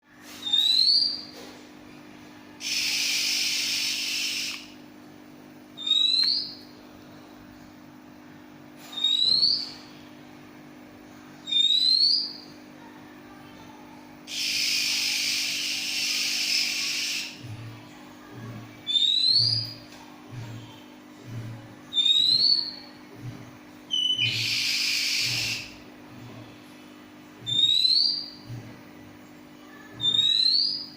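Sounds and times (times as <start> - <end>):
steady low hum: 0.1 - 30.9
bird harsh hissing: 2.6 - 4.6, 14.3 - 17.4, 24.3 - 25.7
bird whistles sliding upward: 24.0 - 25.6.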